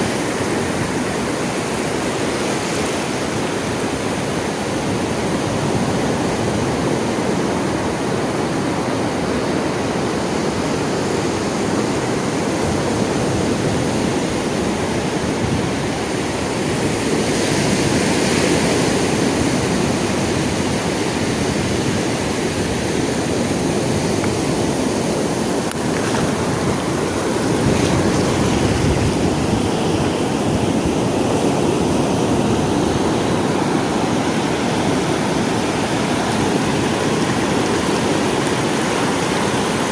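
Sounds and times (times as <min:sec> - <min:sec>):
sea waves washing on shore: 0:00.0 - 0:39.9.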